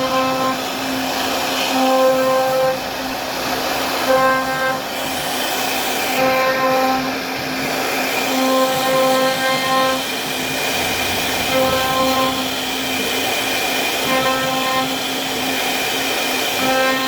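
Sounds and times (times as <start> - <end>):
router cutting wood: 0.0 - 17.0
router spindle whine: 0.0 - 17.0.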